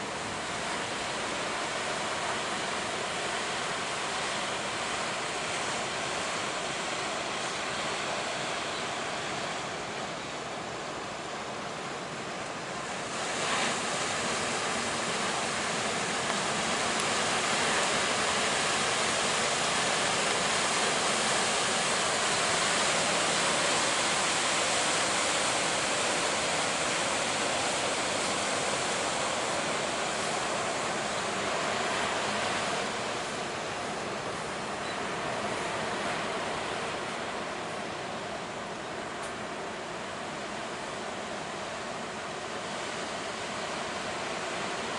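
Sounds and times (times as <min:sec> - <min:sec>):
ocean surf breaking: 0:12.1 - 0:44.9.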